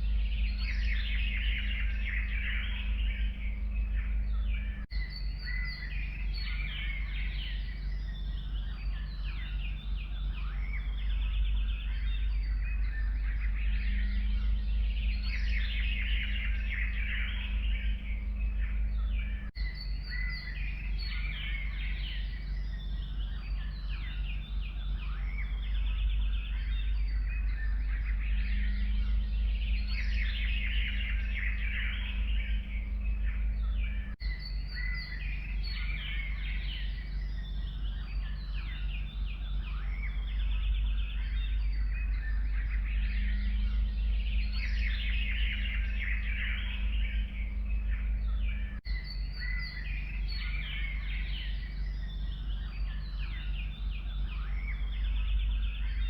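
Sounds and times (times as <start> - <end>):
low rumble: 0.0 - 56.0
songbirds chirping and trilling: 0.0 - 56.0.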